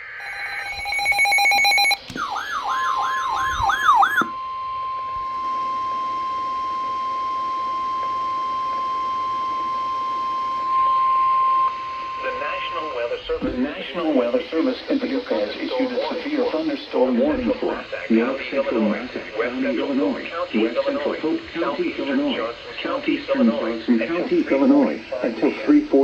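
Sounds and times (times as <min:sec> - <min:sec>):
pulsing electronic alert tones: 0:00.0 - 0:04.3
warbling alert tone: 0:00.0 - 0:04.3
steady alarm tone: 0:00.0 - 0:14.4.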